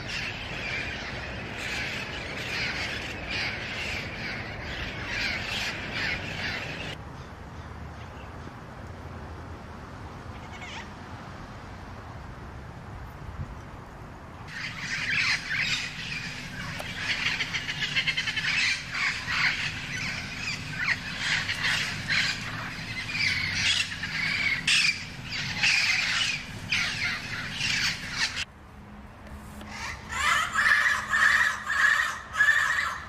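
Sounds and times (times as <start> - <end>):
parrots squawking: 0.0 - 7.0, 14.5 - 28.5, 29.7 - 33.0.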